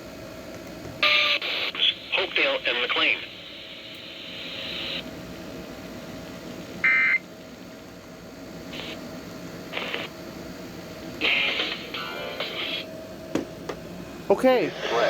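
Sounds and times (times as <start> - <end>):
steady hum: 0.0 - 15.0
receiver hiss: 1.0 - 5.1, 8.6 - 10.2, 11.0 - 13.0, 14.4 - 15.0.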